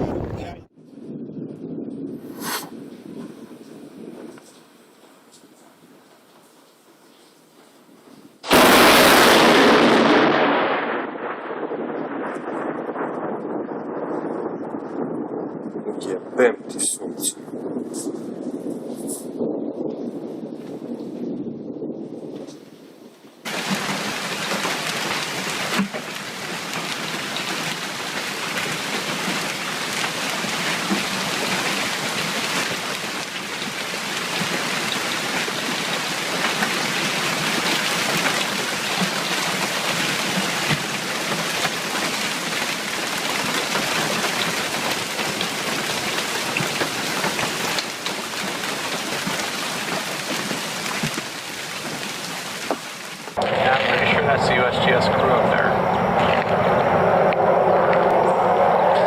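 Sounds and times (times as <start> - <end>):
rushing water: 23.5 - 55.4.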